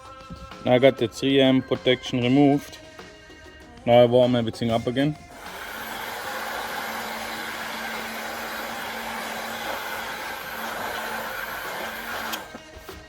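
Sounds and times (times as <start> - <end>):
heat gun blowing hot air: 5.3 - 13.0.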